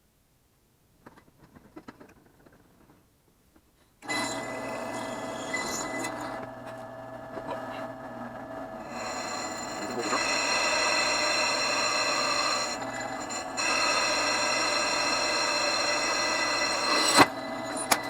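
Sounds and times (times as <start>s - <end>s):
drill press running: 4.0s - 18.0s.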